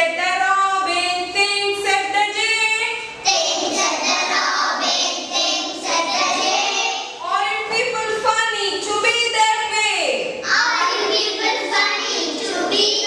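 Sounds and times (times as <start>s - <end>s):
girls singing a simple tune: 3.0s - 7.2s, 10.5s - 13.0s.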